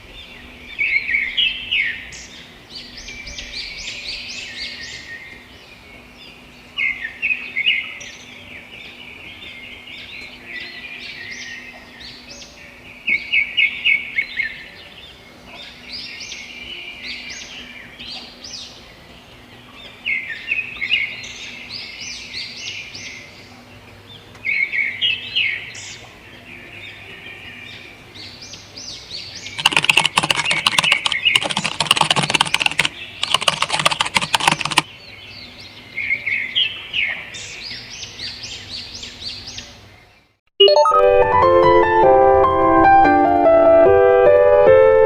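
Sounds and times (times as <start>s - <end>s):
small birds chirping: 0.0s - 40.4s
rapid clicking: 29.6s - 34.9s.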